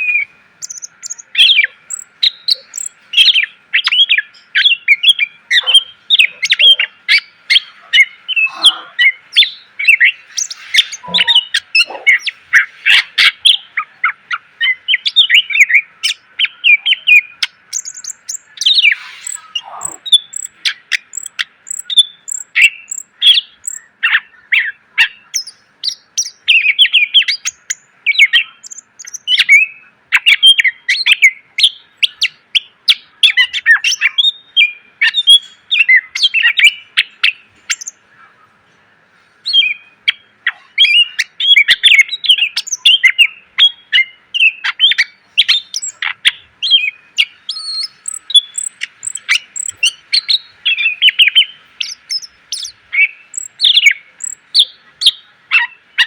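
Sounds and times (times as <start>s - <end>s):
bird singing chirps and trills: 0.0s - 56.0s.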